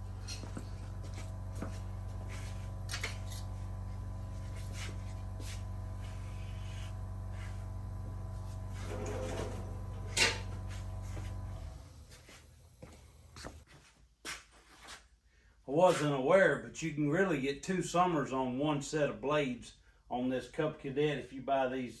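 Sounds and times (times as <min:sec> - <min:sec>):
low electrical hum: 0:00.0 - 0:13.6.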